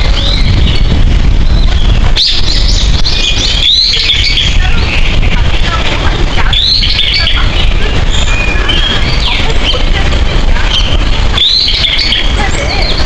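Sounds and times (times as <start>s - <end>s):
small birds chirping: 0.0s - 13.0s
steady low rumble: 0.0s - 13.0s.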